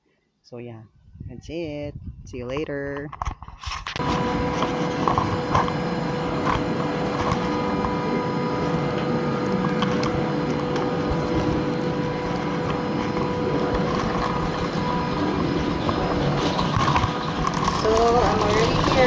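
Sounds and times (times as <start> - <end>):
constant whine: 1.0 - 19.0
train rumbling: 4.0 - 19.0.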